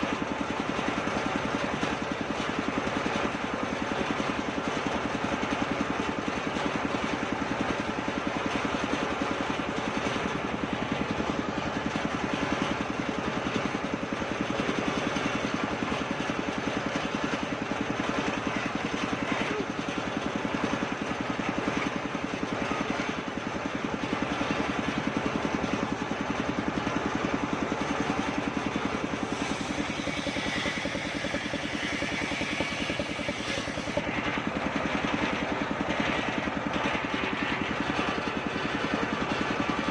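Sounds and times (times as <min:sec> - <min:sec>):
circular saw droning: 0:29.0 - 0:34.1
saw blade cutting wood: 0:29.0 - 0:34.1.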